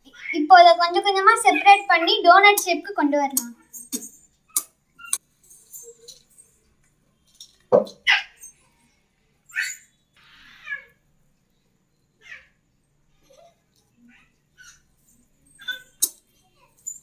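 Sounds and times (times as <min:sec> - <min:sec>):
baby squealing and crying: 0:09.5 - 0:09.8, 0:10.4 - 0:11.0.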